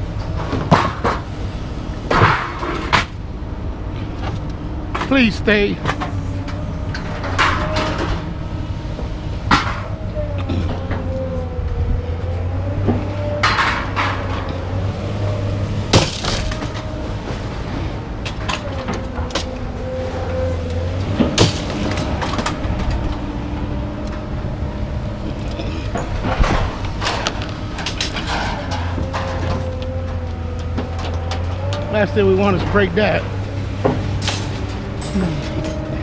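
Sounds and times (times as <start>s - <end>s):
clanks of hard items handled: 12.9s - 14.6s, 25.4s - 31.9s.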